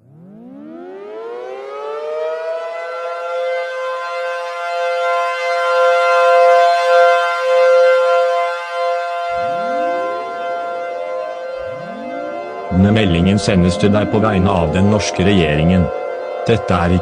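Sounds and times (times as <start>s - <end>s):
second siren winding up: 0.0s - 3.5s, 7.7s - 17.0s
civil defense siren wailing: 0.0s - 17.0s.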